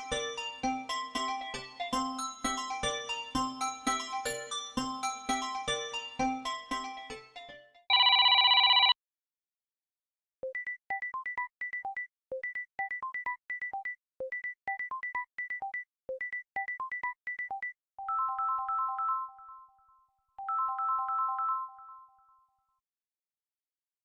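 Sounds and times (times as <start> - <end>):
chiming ringtone: 0.0 - 9.0, 14.7 - 22.6.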